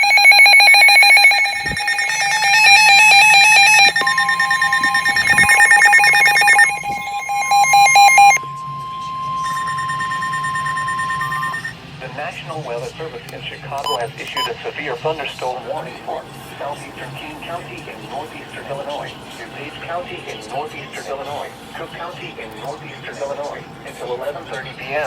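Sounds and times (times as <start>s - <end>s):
pulsing electronic beeps: 0.0s - 11.7s
steady warning alarm tone: 0.0s - 11.7s, 15.8s - 24.7s.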